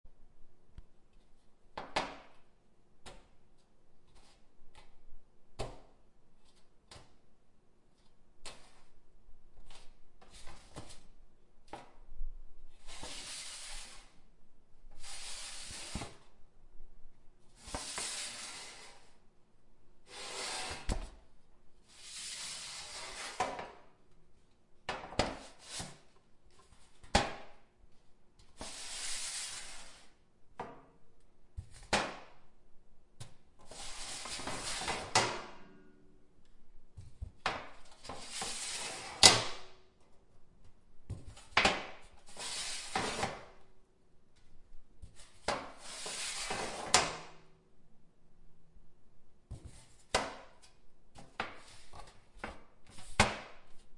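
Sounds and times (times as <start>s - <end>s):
cookie sheet being wiped: 12.8s - 14.2s, 14.9s - 16.2s, 17.6s - 19.2s, 20.1s - 20.9s, 21.8s - 23.5s, 25.5s - 26.1s, 28.6s - 30.2s, 33.7s - 35.1s, 38.0s - 39.2s, 42.3s - 43.3s, 45.1s - 46.9s.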